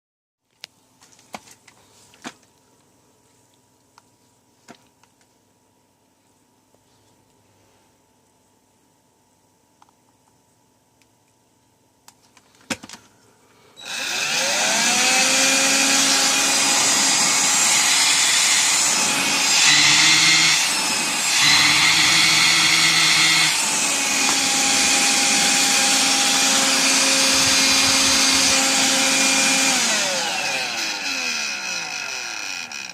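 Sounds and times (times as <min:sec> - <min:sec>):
vacuum cleaner motor whining: 0:13.8 - 0:32.9.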